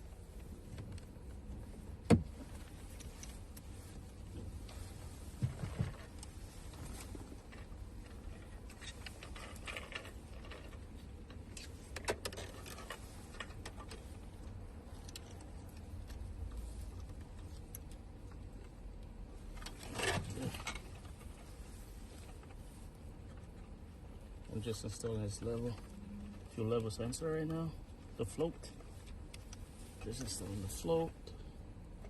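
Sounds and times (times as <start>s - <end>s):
low steady hum: 0.0s - 32.0s
small parts clicking and rattling: 7.4s - 18.7s.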